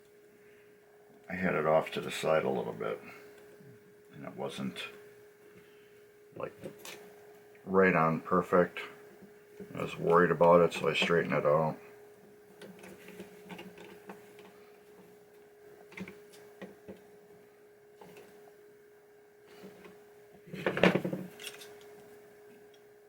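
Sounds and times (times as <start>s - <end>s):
steady hum: 0.0s - 23.0s
small parts clicking and tapping: 20.6s - 21.9s.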